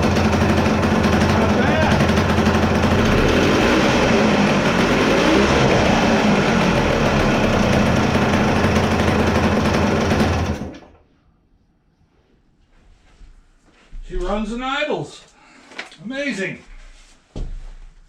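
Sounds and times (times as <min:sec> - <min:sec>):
two-stroke engine idling: 0:00.0 - 0:10.9.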